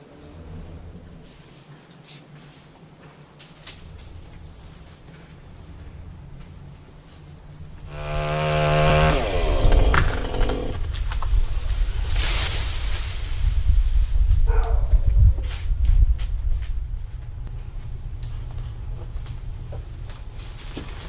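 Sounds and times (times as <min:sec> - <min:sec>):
chainsaw cutting wood: 0:07.9 - 0:11.1.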